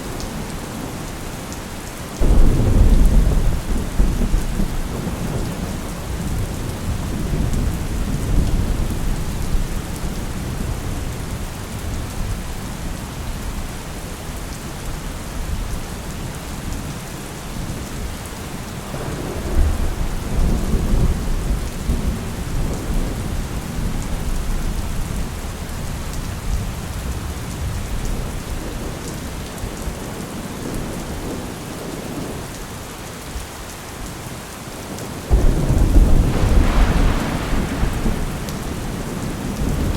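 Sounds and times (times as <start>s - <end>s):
heavy rain: 0.0s - 39.9s
rolling thunder: 2.2s - 11.2s, 18.8s - 25.3s, 35.3s - 39.9s.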